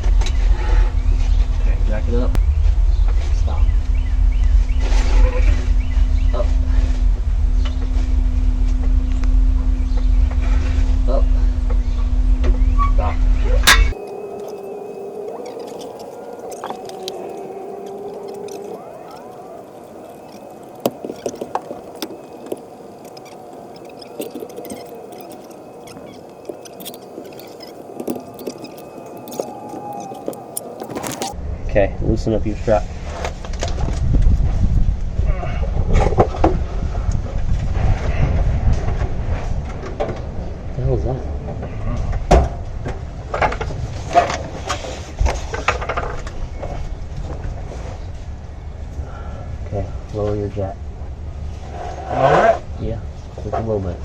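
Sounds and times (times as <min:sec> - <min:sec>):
steady background hum: 0:00.0 - 0:54.0
steady low rumble: 0:00.0 - 0:54.0
metal parts knocking and scraping: 0:13.6 - 0:14.6, 0:20.0 - 0:31.4.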